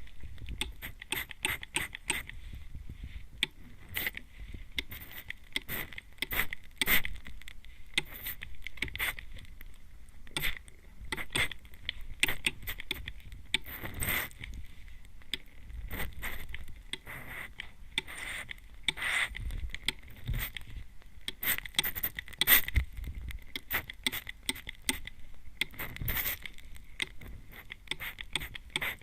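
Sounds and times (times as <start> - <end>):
spray bottle spritzing: 26.0 - 26.4.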